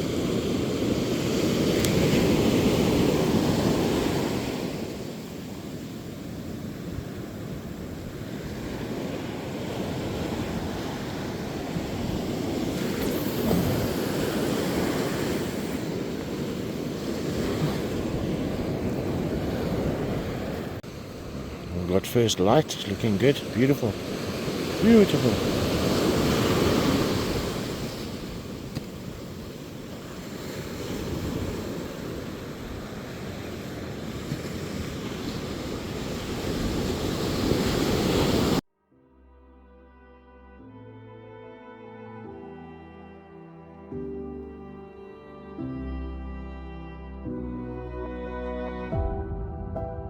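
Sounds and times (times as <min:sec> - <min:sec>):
wind rumbling on microphone: 0:00.0 - 0:21.8, 0:25.4 - 0:38.6
ocean surf washing ashore: 0:00.0 - 0:38.6.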